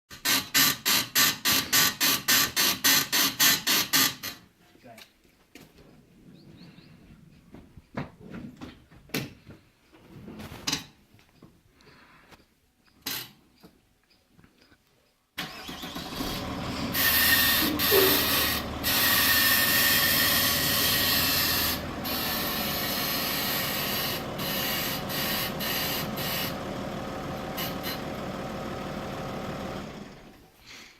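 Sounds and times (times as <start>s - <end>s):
loud steady engine noise: 15.7s - 30.5s.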